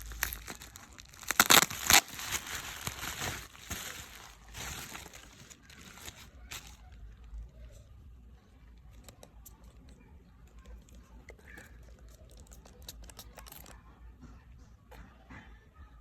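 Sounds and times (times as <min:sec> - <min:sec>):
packaging clicking and crinkling: 0:00.0 - 0:07.4, 0:08.8 - 0:13.8.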